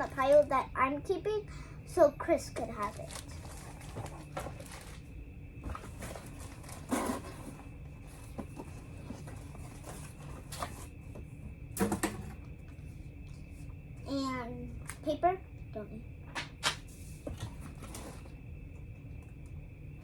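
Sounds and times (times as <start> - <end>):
low room hum: 0.0 - 20.0
plastic rustles and clicks: 2.7 - 5.1.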